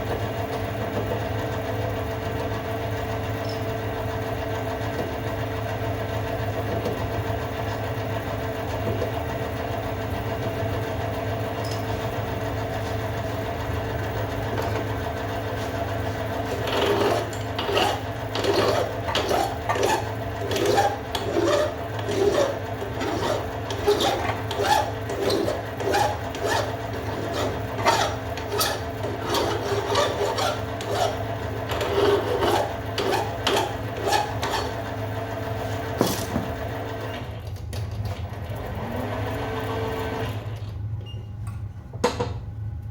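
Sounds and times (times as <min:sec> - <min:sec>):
steady machine hum: 0:00.0 - 0:37.4
file rasping on metal: 0:15.6 - 0:34.8.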